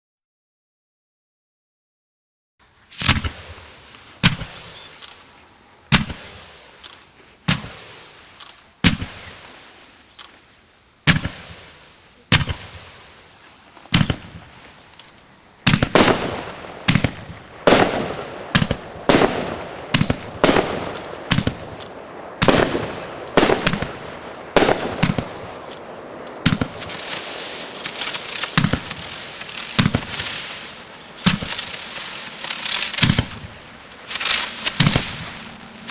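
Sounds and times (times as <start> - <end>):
firework crackling: 2.8 - 35.9
firework bangs: 2.9 - 5.3, 5.9 - 10.0, 11.0 - 14.6, 15.6 - 35.9.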